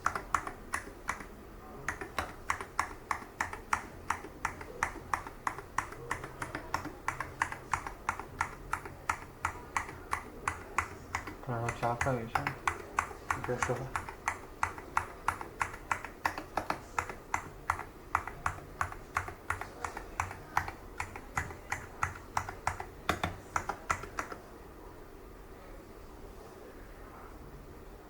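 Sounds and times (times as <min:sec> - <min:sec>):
keyboard keys clicking: 0:00.0 - 0:24.4.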